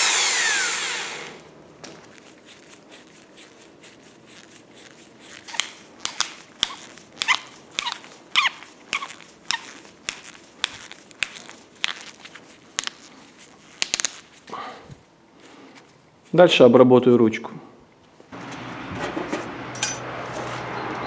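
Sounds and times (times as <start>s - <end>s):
hand tool strokes with ring: 2.1s - 14.5s.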